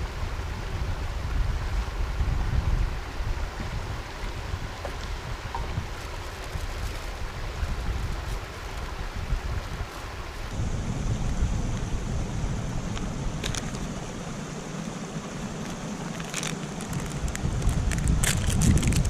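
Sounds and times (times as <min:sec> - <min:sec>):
wind buffeting microphone: 0:00.0 - 0:19.0
sharp crackles: 0:12.8 - 0:19.0.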